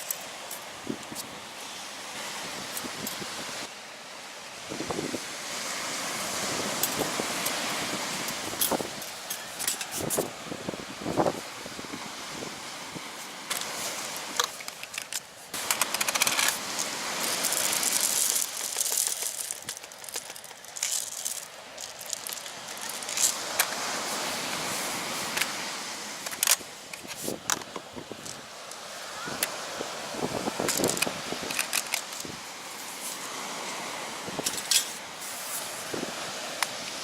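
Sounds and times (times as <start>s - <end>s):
rustling: 13.7s - 23.6s
small objects clinking and rattling: 14.6s - 23.4s.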